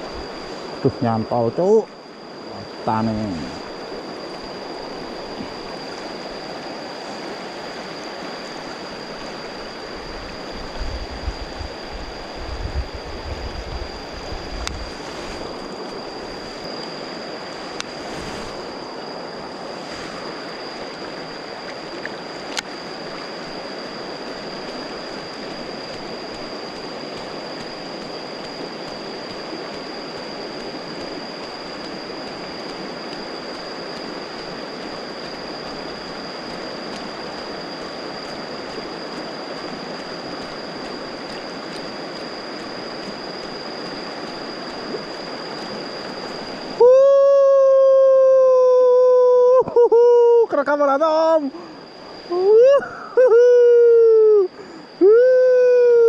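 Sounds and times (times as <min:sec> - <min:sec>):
thin high tone: 0:00.0 - 0:10.5
flowing stream water: 0:00.0 - 0:12.4, 0:13.1 - 0:46.9.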